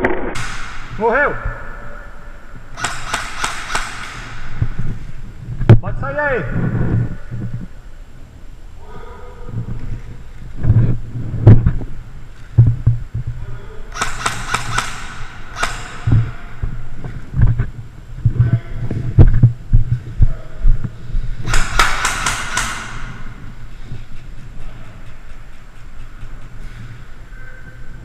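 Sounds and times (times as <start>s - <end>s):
low thumps: 10.5s - 13.5s, 14.1s - 24.6s.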